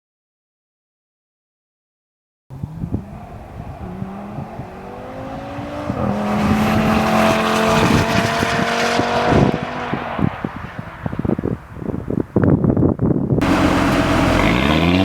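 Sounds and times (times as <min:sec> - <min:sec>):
car engine accelerating: 0:02.5 - 0:11.6, 0:13.4 - 0:15.0.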